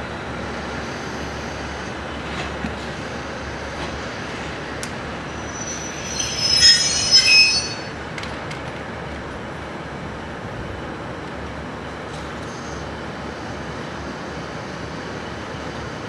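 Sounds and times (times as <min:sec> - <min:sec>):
train rolling rumble: 0:00.0 - 0:16.0
train wheels squealing: 0:00.4 - 0:08.3, 0:12.4 - 0:16.0.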